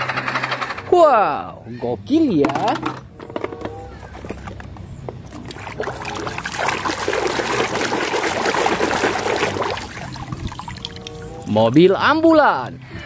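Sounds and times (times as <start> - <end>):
water pouring and splashing: 5.3 - 11.7.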